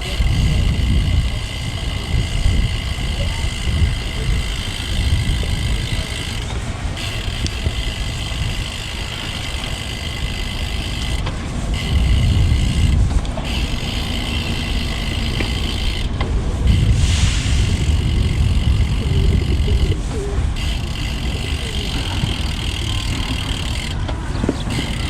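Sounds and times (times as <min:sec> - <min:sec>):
bike tyre rumble: 0:00.0 - 0:25.0
wind buffeting microphone: 0:00.0 - 0:25.0
steady high hiss: 0:11.4 - 0:23.5.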